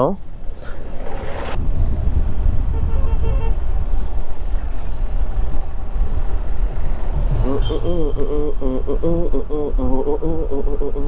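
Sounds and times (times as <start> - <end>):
wind and road rumble: 0.0 - 11.0
vehicle horn toot: 2.6 - 3.7, 7.3 - 8.4.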